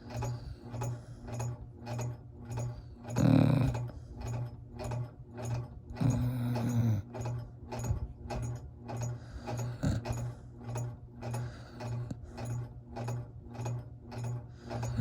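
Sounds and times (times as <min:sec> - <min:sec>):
rattly snoring: 0:02.7 - 0:08.0, 0:09.1 - 0:10.4, 0:14.6 - 0:15.0.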